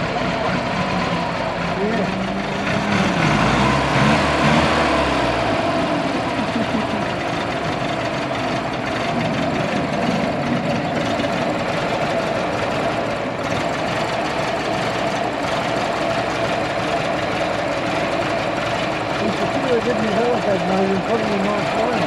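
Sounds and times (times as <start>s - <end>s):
car engine idling: 0.0s - 22.0s
steady whine: 0.0s - 22.0s.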